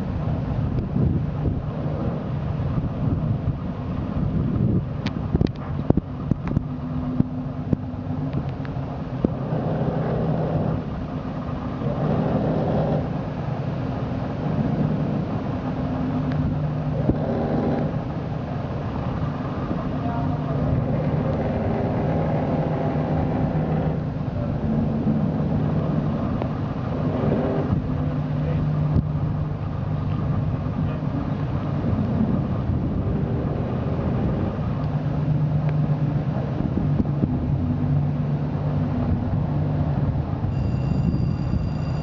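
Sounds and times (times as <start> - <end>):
boat engine humming: 0.0 - 42.0.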